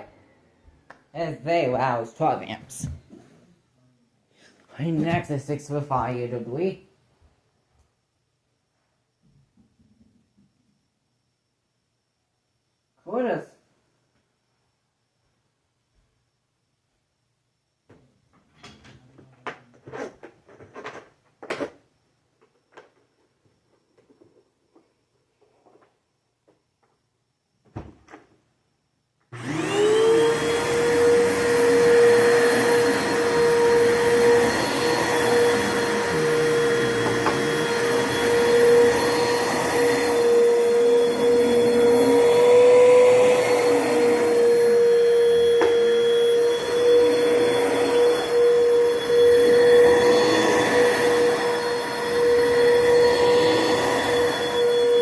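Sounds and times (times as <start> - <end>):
vacuum cleaner running: 29.3 - 55.0.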